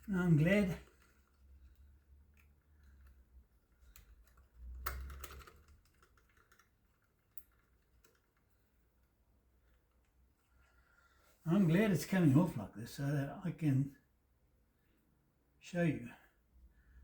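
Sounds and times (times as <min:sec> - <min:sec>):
small parts clicking and tapping: 0:00.0 - 0:10.8.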